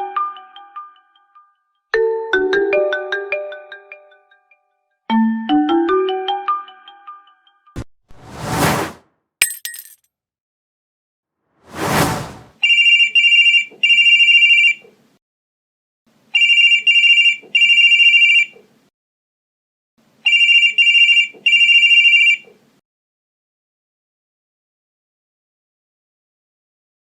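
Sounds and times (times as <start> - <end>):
brief whoosh: 8.1 - 9.0, 11.7 - 12.5.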